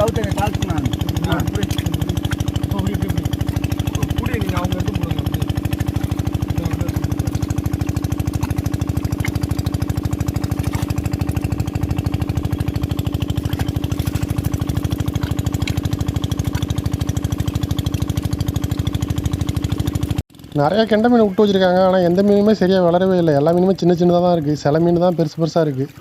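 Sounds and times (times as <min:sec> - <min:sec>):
small engine chugging: 0:00.0 - 0:26.0.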